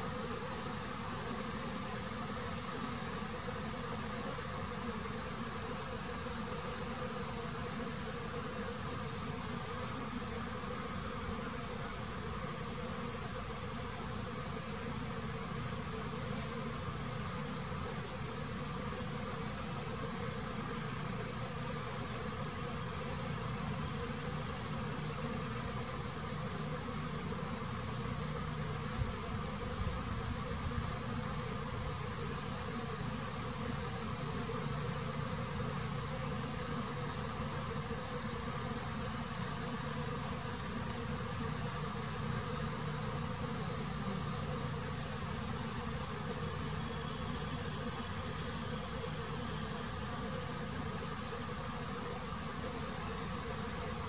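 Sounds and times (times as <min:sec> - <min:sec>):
high-pitched insect trill: 0:00.0 - 0:54.0
honeybees buzzing: 0:00.0 - 0:54.0.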